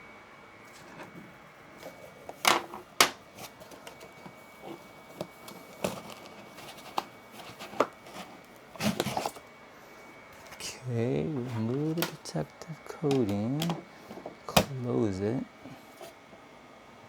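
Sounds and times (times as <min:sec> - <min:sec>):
hands handling plastic cover: 0:01.8 - 0:09.5, 0:10.4 - 0:15.1.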